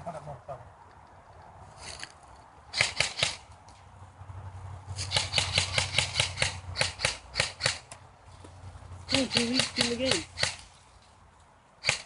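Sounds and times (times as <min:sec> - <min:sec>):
airsoft guns firing: 0:02.7 - 0:03.4, 0:05.1 - 0:07.9, 0:09.1 - 0:10.6.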